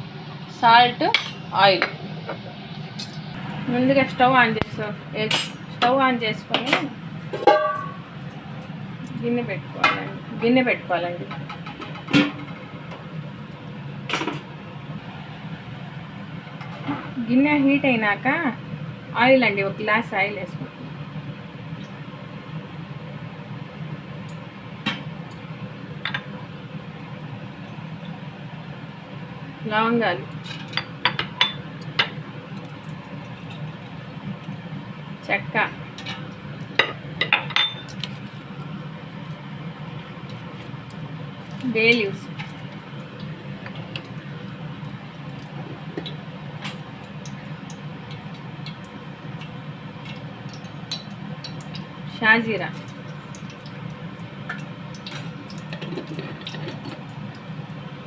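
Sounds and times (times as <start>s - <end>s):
spices crackling in hot oil: 0.0s - 58.0s
oil popping: 42.4s - 52.0s, 52.8s - 57.8s.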